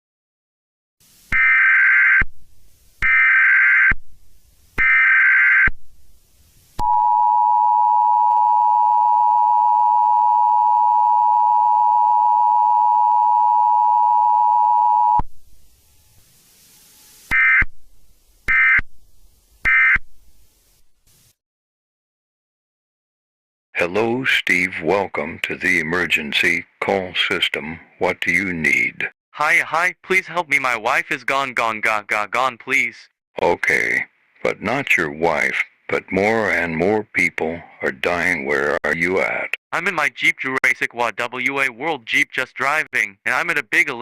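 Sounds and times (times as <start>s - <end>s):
buzzing data bursts: 18.4s - 20.0s.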